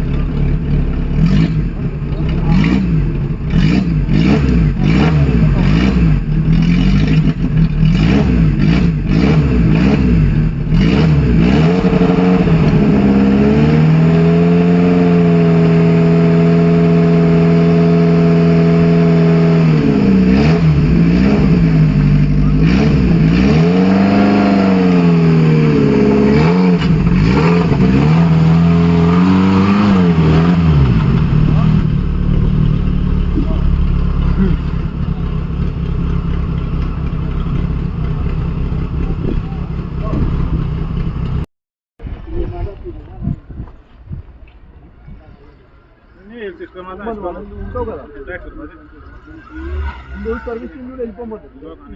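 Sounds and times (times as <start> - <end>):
vehicle engine revving: 0.0 - 41.5, 46.6 - 51.9
knocks and clatter: 31.0 - 41.4.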